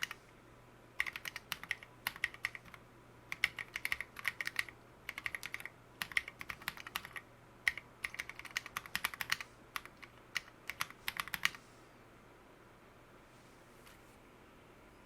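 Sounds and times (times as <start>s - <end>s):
typing on mechanical keyboard: 1.0s - 11.6s.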